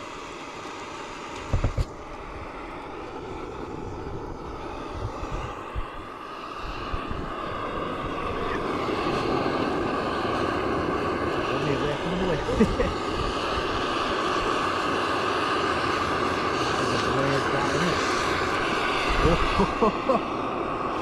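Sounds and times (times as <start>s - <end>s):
gas stove burner roaring: 0.0s - 21.0s.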